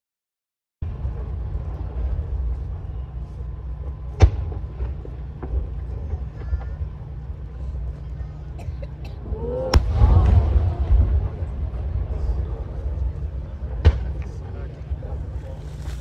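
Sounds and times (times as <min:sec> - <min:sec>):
steady low rumble: 0:00.8 - 0:16.0
firework bang: 0:04.2 - 0:05.6, 0:09.7 - 0:12.4.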